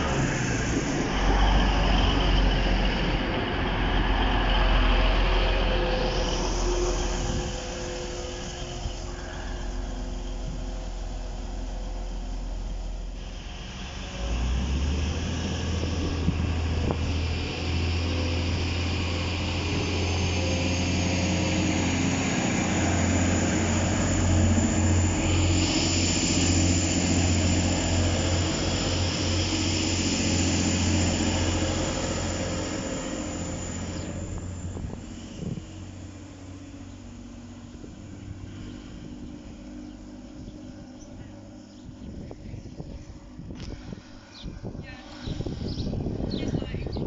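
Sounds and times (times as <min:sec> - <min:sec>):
passing train hiss: 0:00.0 - 0:46.7
diesel train engine droning: 0:00.0 - 0:47.0.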